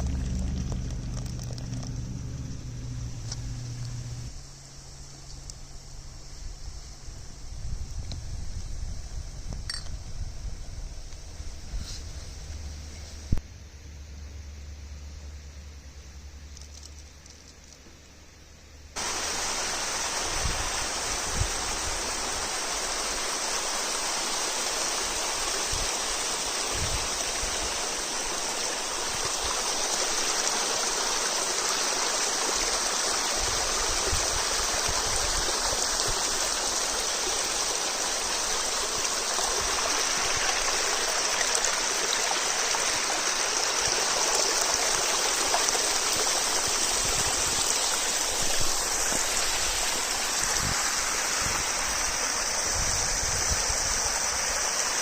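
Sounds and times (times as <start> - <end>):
stream flowing: 0.0 - 4.3, 19.0 - 55.0
low rumbles: 0.0 - 8.3.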